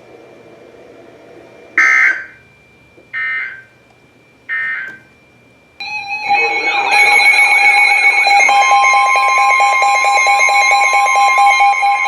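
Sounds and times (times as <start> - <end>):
faint steady high tone: 2.4 - 12.0.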